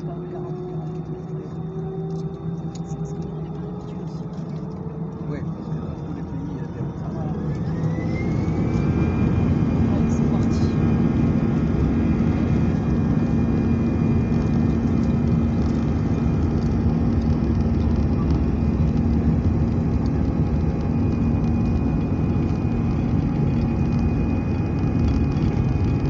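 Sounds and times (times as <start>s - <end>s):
aircraft cabin engine rumble: 0.0s - 26.0s.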